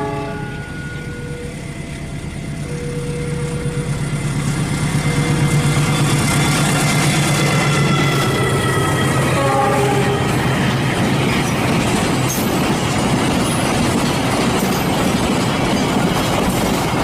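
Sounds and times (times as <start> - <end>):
high ringing tones: 0.0 - 10.9
locomotive diesel engine drone: 0.0 - 12.3.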